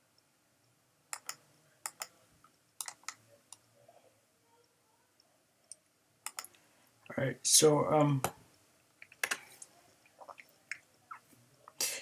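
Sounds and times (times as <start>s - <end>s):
computer clicks: 1.1s - 3.7s, 5.7s - 6.6s, 9.0s - 9.7s.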